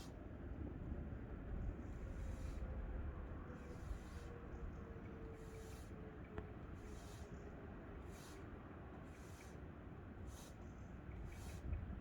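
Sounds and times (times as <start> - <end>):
wind noise on microphone: 11.3 - 12.0.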